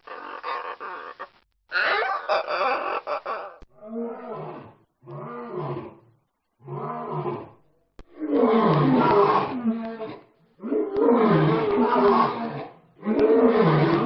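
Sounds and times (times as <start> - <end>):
lion roaring: 3.8 - 14.0.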